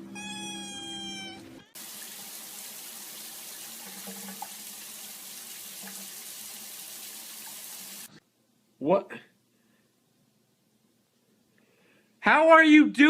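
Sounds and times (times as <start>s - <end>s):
water running from a tap: 1.8s - 8.1s.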